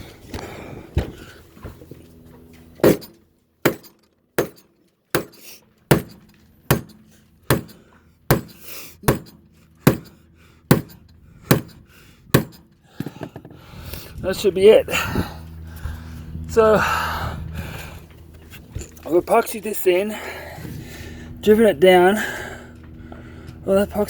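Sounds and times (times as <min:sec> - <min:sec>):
mallet knocking wooden plug: 0:03.7 - 0:04.6, 0:05.2 - 0:10.1, 0:10.7 - 0:11.8, 0:12.4 - 0:12.6.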